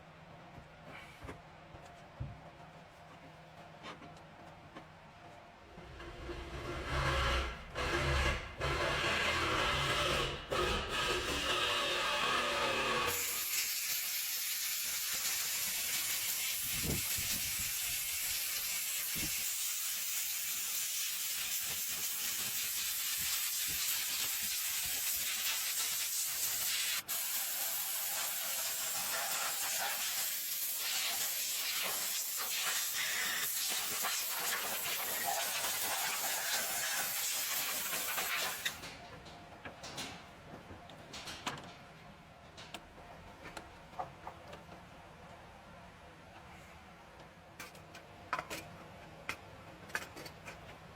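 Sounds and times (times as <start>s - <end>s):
high-pitched hiss of spray: 13.1s - 38.8s.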